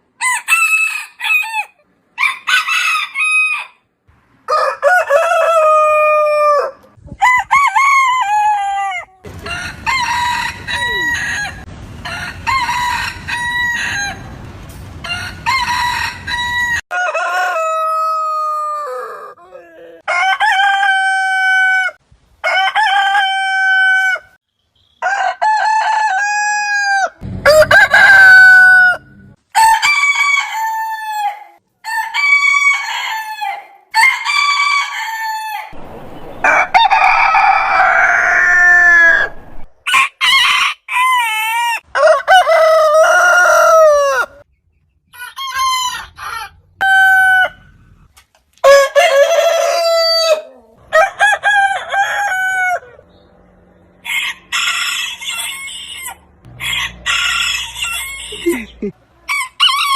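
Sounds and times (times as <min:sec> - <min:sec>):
roosters crowing: 0:00.2 - 0:03.9, 0:04.5 - 0:24.4, 0:25.0 - 0:44.5, 0:45.1 - 0:48.0, 0:48.6 - 0:59.9
low rumble: 0:27.2 - 0:29.4, 0:35.8 - 0:39.8.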